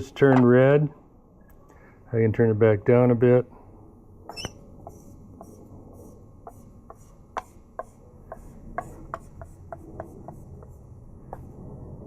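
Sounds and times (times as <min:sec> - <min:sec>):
pyrography pen scratching wood: 0:04.3 - 0:11.5.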